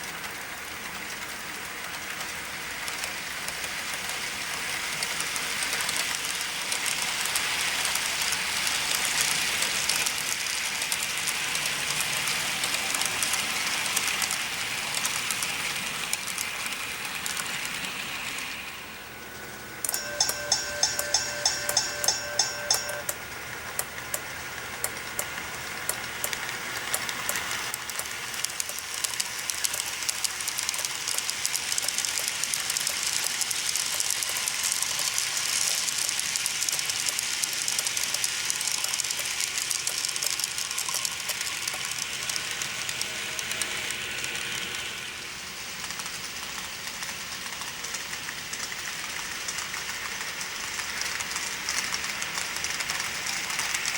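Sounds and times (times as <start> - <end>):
model train rolling on track: 0.0 - 53.9
fine wheel clicks: 19.8 - 44.4
ringing bell-like tone: 19.9 - 23.1.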